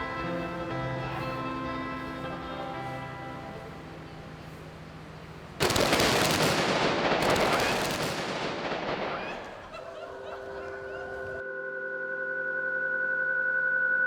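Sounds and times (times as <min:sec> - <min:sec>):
soft music: 0:00.0 - 0:05.6
gunpowder burning with crackling rush: 0:04.4 - 0:10.0.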